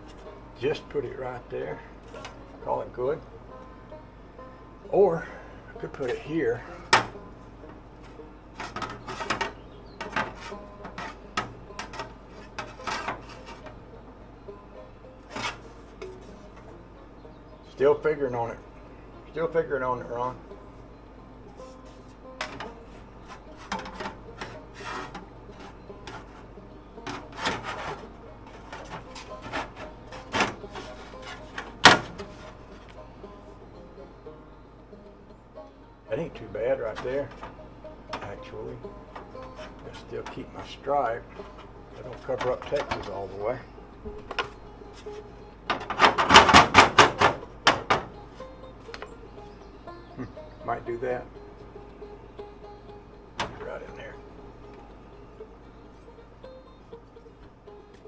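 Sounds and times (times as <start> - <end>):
metal plate scraping: 0.0 - 3.4, 4.8 - 13.9, 15.2 - 16.8, 21.5 - 33.6, 36.1 - 49.6, 53.4 - 54.8.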